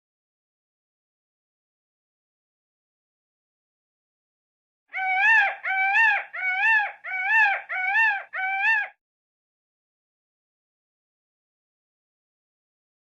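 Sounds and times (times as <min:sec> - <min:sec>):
peacock calling: 0:05.0 - 0:09.0.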